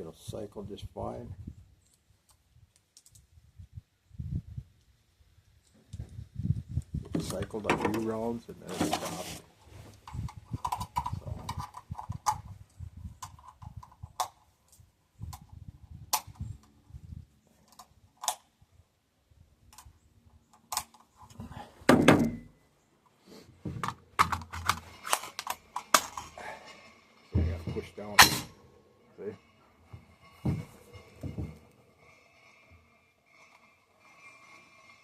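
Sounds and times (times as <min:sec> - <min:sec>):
gun action clicking and clacking: 0:20.5 - 0:21.2, 0:23.8 - 0:26.4.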